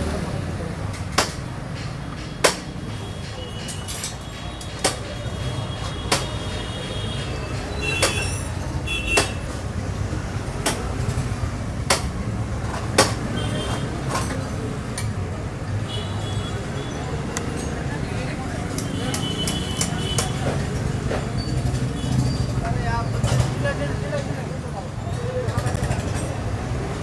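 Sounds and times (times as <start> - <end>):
hand tools knocking on metal: 1.0 - 8.4.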